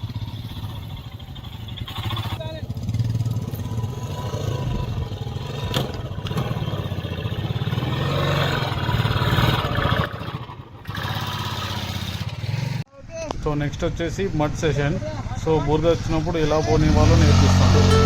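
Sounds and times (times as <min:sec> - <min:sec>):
motorcycle engine revving: 0:00.0 - 0:12.9, 0:16.6 - 0:18.0.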